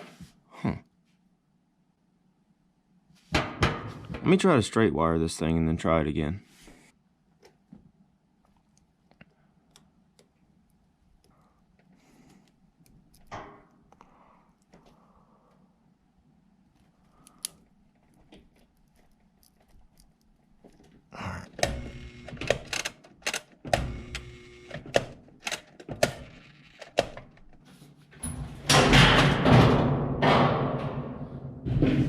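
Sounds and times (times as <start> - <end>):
washing machine motor humming: 21.6 - 22.8, 23.7 - 25.0.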